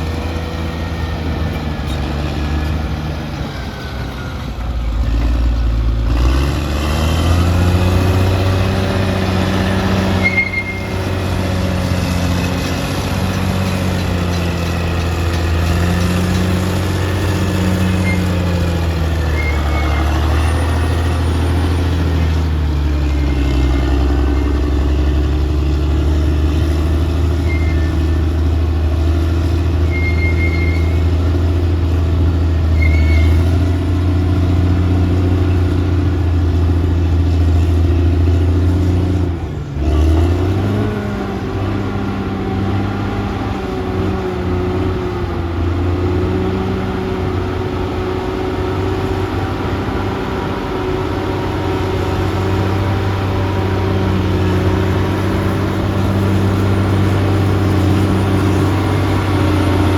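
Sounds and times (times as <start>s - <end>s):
bulldozer diesel engine running: 0.0s - 59.9s
short high squeals: 9.8s - 11.2s, 17.8s - 22.2s, 27.4s - 28.2s, 29.8s - 31.2s, 32.8s - 33.5s.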